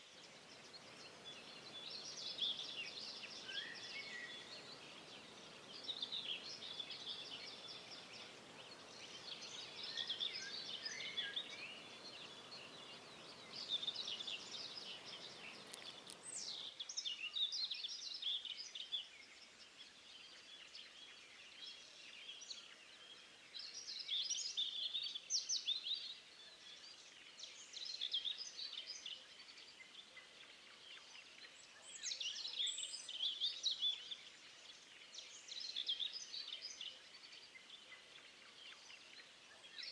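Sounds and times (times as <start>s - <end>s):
songbirds chirping and trilling: 0.0s - 16.8s
faint steady hiss: 0.0s - 25.4s.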